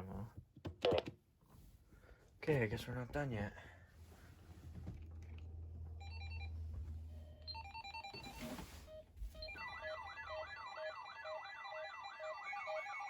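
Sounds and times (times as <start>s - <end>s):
electronic ringtone melody: 7.4s - 8.6s, 9.4s - 13.0s.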